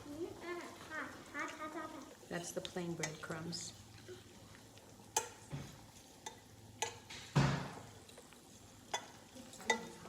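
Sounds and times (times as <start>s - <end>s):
frying sizzle: 0.0s - 10.0s
utensil clicking against pan: 5.1s - 5.5s, 6.2s - 7.3s, 8.9s - 10.0s.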